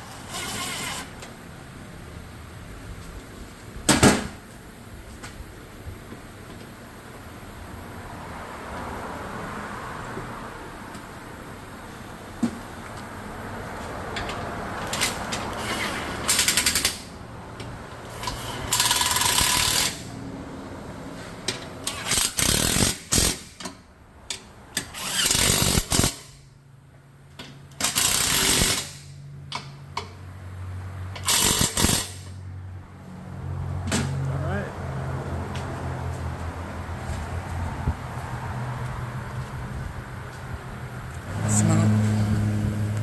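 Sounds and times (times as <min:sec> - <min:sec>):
impact wrench bursts: 0:14.9 - 0:17.2, 0:18.1 - 0:20.2, 0:21.8 - 0:23.8, 0:24.8 - 0:26.4, 0:27.7 - 0:29.7, 0:31.1 - 0:32.4.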